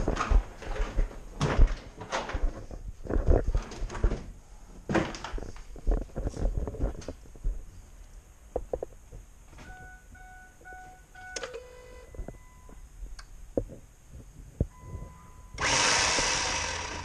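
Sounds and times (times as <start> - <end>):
faint clicks and knocks: 5.0 - 9.8
steady beep tones: 9.6 - 12.8, 14.7 - 15.6
short electronic beeps: 9.7 - 12.8, 14.7 - 15.6.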